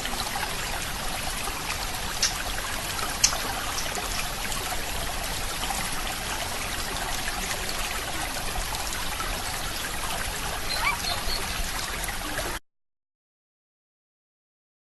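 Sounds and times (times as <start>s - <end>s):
small stream trickling: 0.0s - 12.6s.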